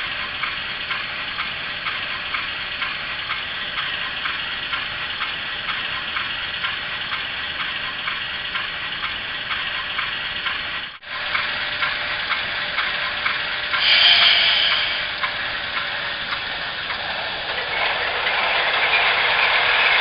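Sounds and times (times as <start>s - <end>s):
hissing diesel locomotive drone: 0.0s - 20.0s
louder brighter locomotive sound: 11.1s - 20.0s.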